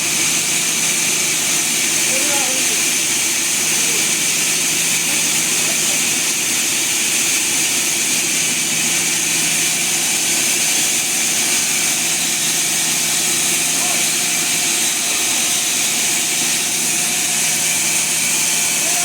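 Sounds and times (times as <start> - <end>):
sawmill machinery hum: 0.0 - 19.0.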